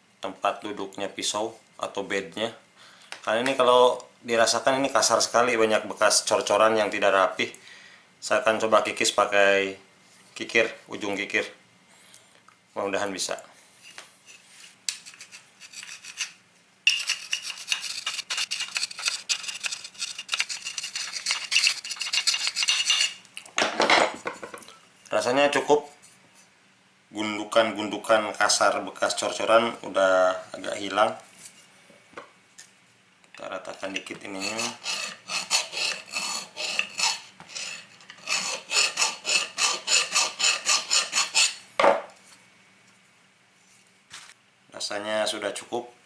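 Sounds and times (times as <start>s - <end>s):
metal file scraping metal: 14.2s - 23.2s, 33.7s - 41.7s.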